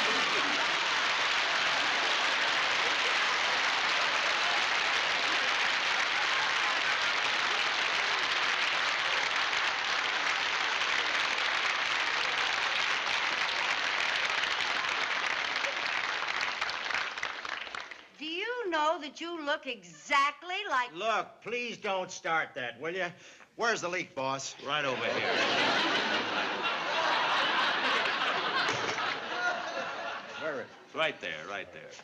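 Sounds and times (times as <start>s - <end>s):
audience applauding: 0.0s - 18.2s, 25.0s - 30.3s.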